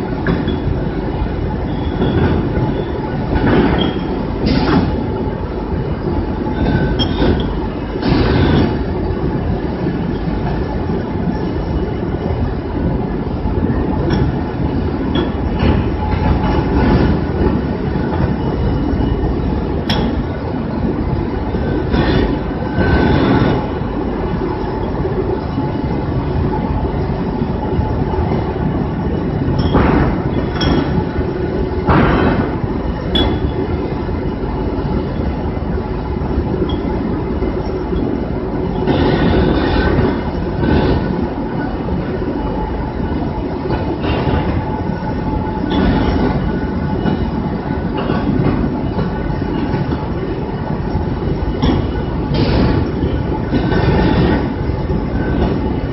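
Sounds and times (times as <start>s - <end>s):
steady hum: 0.0s - 55.9s.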